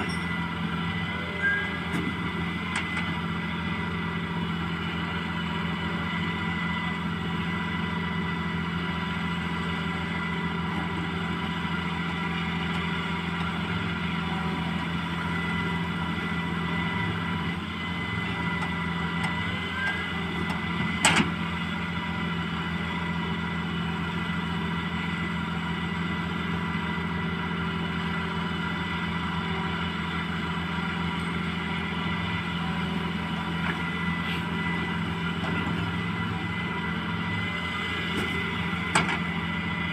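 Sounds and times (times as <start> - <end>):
excavator engine running: 0.0 - 39.9.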